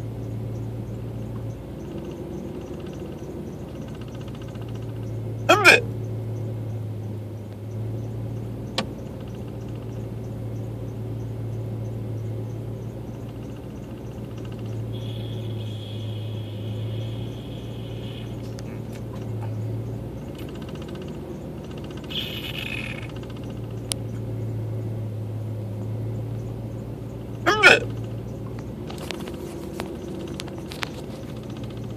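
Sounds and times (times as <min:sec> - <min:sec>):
pickup truck engine idling: 0:00.0 - 0:31.9.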